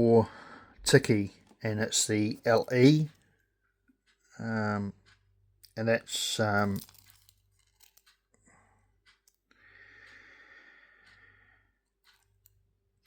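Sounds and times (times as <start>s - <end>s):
faint breath out: 9.6s - 11.7s.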